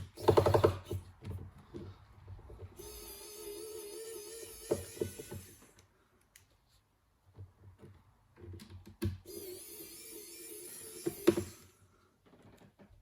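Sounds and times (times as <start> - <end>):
electric screwdriver whining: 2.8 - 5.8, 9.3 - 11.8.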